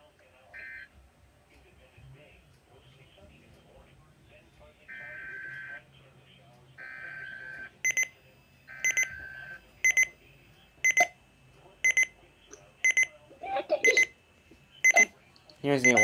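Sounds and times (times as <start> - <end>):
high double beep alarm: 7.8 - 8.2, 8.8 - 9.1, 9.8 - 10.1, 10.8 - 11.1, 11.8 - 12.1, 14.8 - 15.1.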